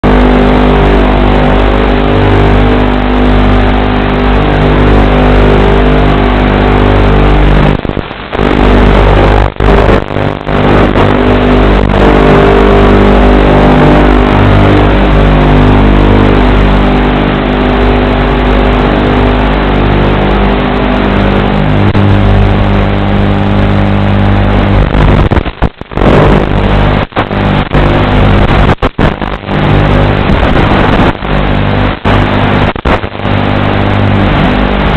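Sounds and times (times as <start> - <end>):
drone motors whining: 0.0 - 25.3.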